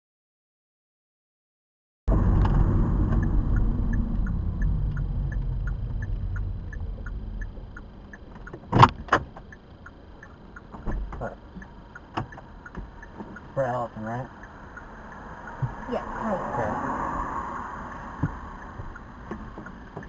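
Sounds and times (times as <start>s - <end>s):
road and car noise: 2.1s - 20.0s
turn signal ticking: 2.1s - 20.0s
sharp clicks: 2.2s - 15.9s.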